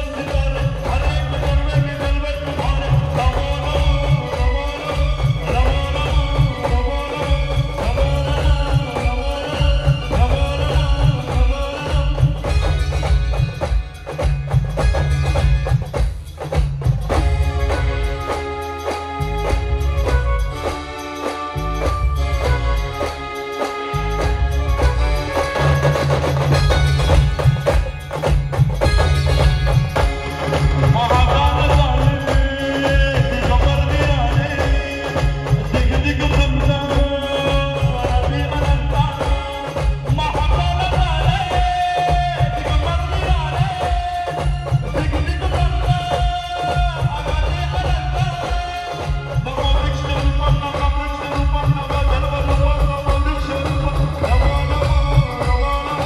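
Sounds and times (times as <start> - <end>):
heavy bass drum: 0.0 - 21.0, 24.0 - 56.0
rapid drum and percussion strikes: 0.0 - 56.0
brass band playing: 17.1 - 33.1
horns holding long notes: 17.2 - 28.1.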